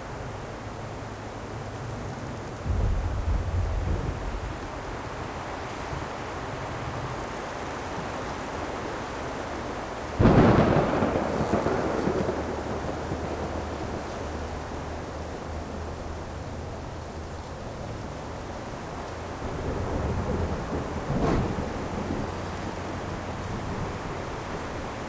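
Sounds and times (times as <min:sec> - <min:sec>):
steady rain: 0:00.0 - 0:25.0
thunderclap rumbling: 0:02.6 - 0:06.1, 0:10.2 - 0:16.2, 0:19.4 - 0:25.0.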